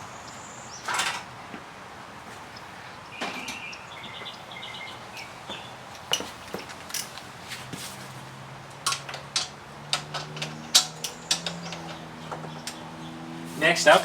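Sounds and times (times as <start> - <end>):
clicks and knocks of hand tools: 8.7 - 12.9.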